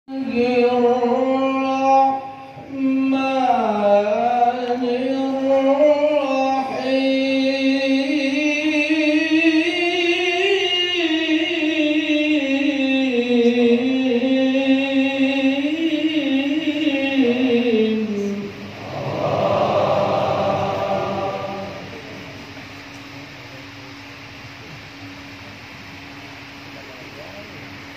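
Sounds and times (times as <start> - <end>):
man chanting: 0.1 - 22.3.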